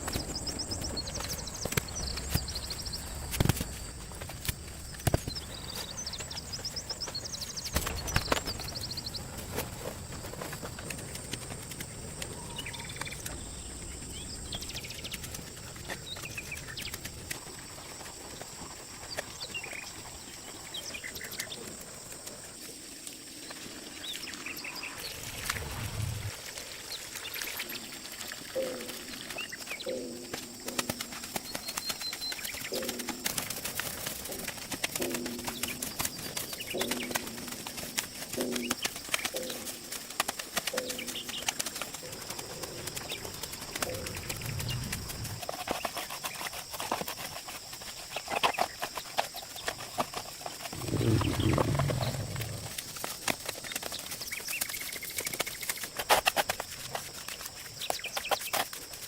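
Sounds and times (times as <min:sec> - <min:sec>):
birds cooing: 0:32.5 - 0:40.0, 0:40.6 - 0:45.5, 0:50.7 - 0:52.9
low rumbles: 0:42.1 - 0:45.5, 0:50.7 - 0:52.9.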